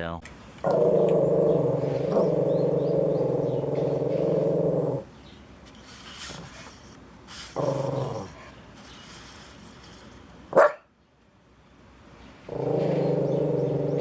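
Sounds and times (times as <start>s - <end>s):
small dog growling: 0.6s - 5.1s, 6.2s - 8.6s, 12.4s - 14.0s.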